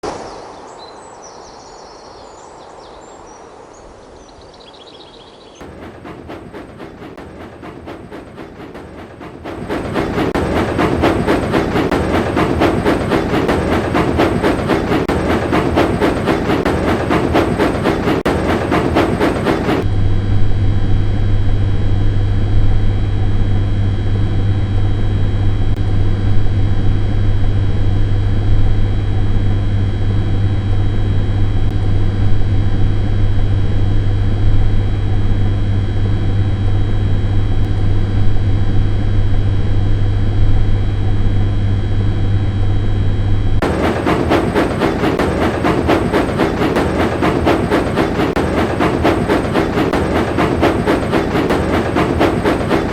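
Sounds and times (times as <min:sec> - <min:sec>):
train clattering: 0:05.6 - 0:19.9, 0:43.6 - 0:52.9
low engine drone: 0:05.6 - 0:52.9.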